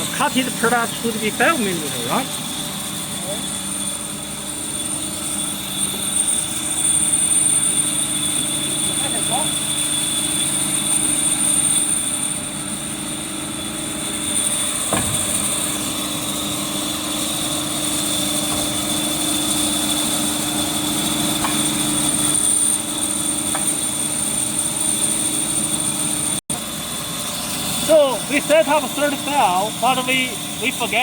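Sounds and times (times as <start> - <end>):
band saw running: 0.0 - 31.0
hydraulic pump whine: 0.0 - 31.0
sharp knock: 14.9 - 15.3.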